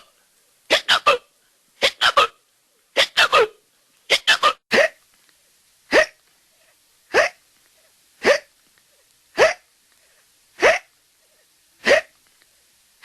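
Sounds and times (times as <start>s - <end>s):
cartoon hiccups: 0.7s - 2.4s, 3.0s - 5.0s, 5.9s - 6.2s, 7.1s - 7.5s, 8.2s - 8.6s, 9.3s - 9.7s, 10.6s - 11.0s, 11.8s - 12.2s.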